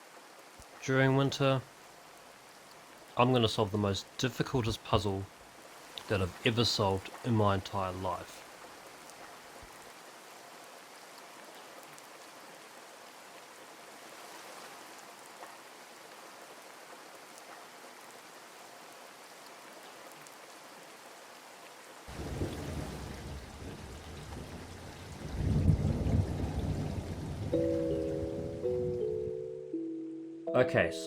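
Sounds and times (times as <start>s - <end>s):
steady rain hiss: 0.0s - 29.4s
rumbling thunder: 22.1s - 28.6s.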